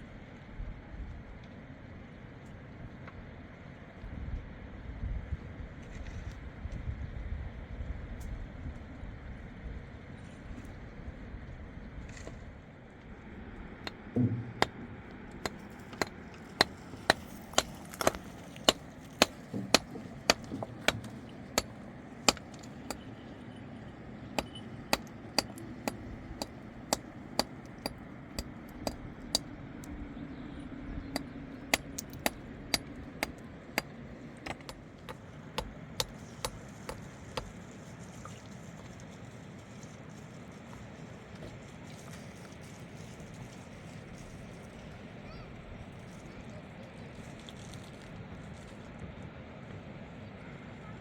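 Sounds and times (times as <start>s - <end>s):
hand tool clinking taps: 34.4s - 35.2s.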